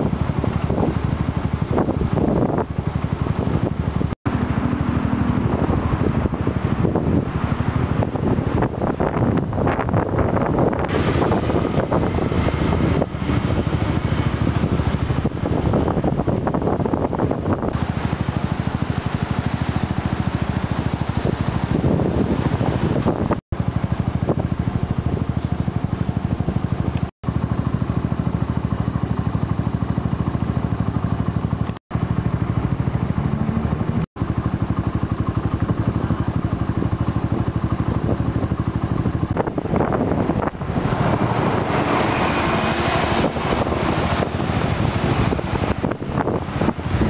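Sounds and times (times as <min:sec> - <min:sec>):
rough gusty noise: 0:00.0 - 0:23.4, 0:38.2 - 0:47.0.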